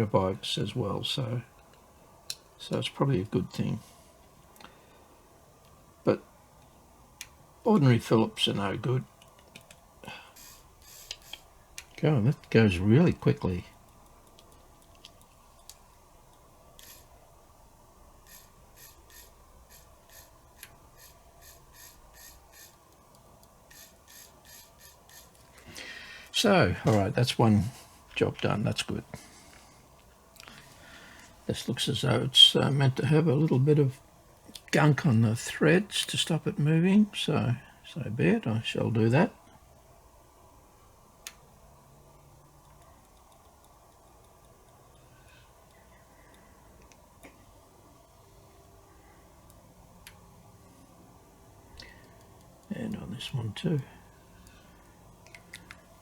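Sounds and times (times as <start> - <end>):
screwdriver scraping: 16.8 - 17.1, 18.3 - 20.3, 21.0 - 22.8, 23.7 - 25.4.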